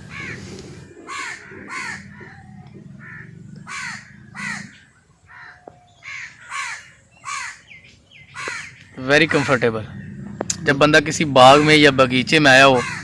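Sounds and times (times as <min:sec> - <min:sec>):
low steady rumble: 0:00.0 - 0:05.2, 0:09.2 - 0:13.0
crows cawing: 0:00.0 - 0:13.0.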